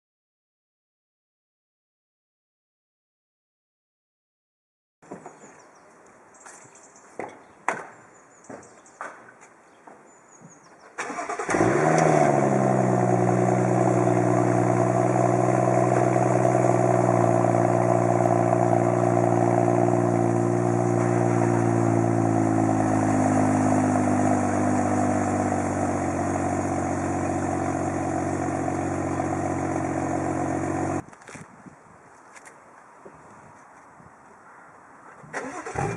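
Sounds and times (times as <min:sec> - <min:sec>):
engine starter cranking: 0:11.0 - 0:12.4, 0:35.3 - 0:35.9
car engine revving and idling: 0:11.1 - 0:31.0.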